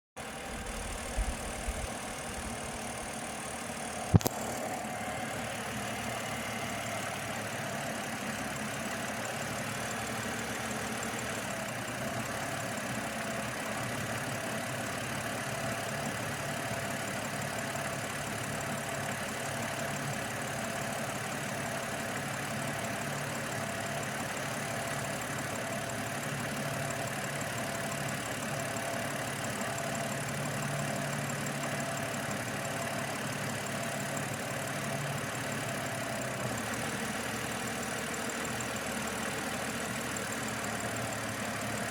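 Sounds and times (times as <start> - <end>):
car engine rough idle: 0.2 - 41.9
sharp click: 4.1 - 4.6.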